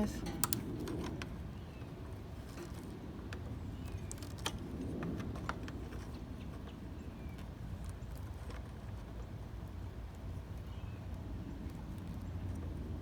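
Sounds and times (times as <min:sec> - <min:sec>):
pliers clicking on metal: 0:00.2 - 0:00.7.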